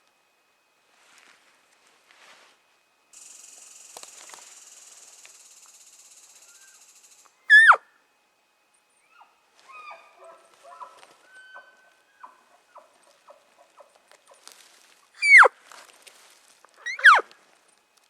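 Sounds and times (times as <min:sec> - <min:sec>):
faint chirping calls: 0:03.2 - 0:07.9, 0:08.8 - 0:14.6, 0:15.2 - 0:15.5, 0:16.8 - 0:17.3.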